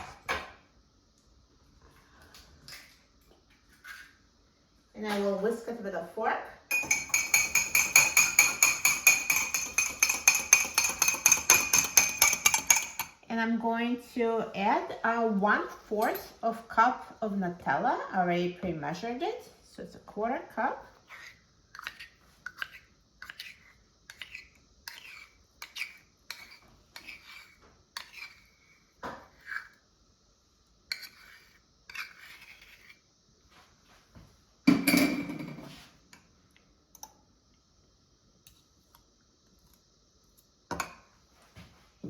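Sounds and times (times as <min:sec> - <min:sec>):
utensil scraping a cup: 0:21.1 - 0:29.8, 0:30.9 - 0:33.0.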